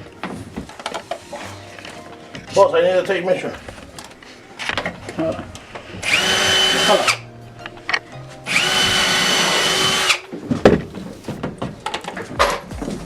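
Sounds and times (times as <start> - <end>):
power drill driving screws into wood: 6.0 - 7.2, 8.5 - 10.3.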